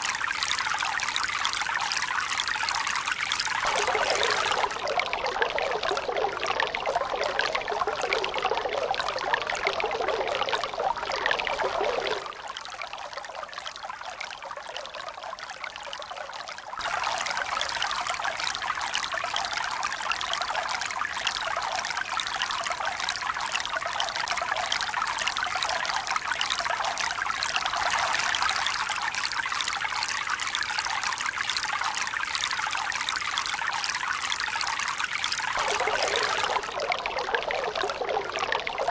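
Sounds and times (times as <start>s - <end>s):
running splashing water: 3.5s - 4.9s, 35.5s - 37.0s.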